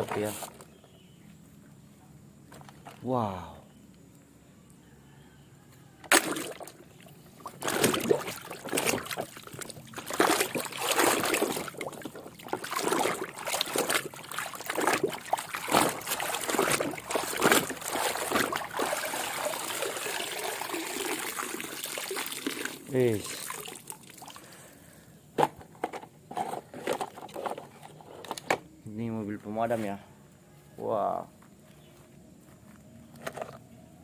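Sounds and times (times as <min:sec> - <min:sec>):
water splashing and trickling: 0:06.1 - 0:24.8.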